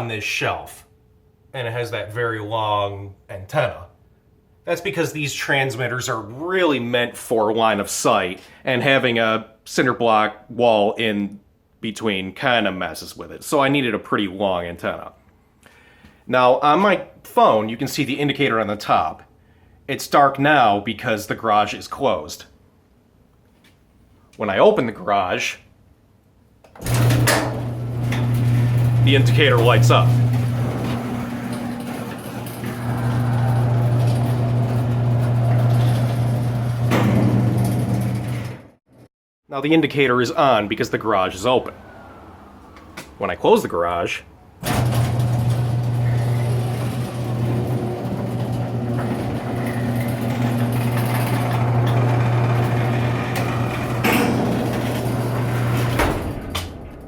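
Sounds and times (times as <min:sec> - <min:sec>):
garage door opener humming: 0:26.7 - 0:38.8, 0:44.6 - 0:57.0.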